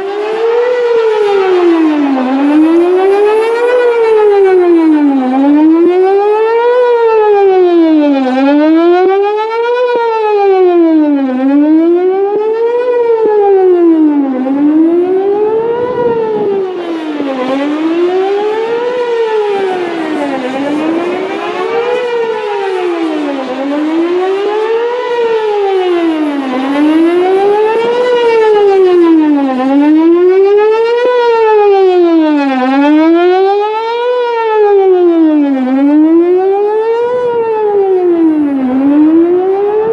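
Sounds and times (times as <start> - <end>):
outdoor warning siren wailing: 0.0 - 39.9.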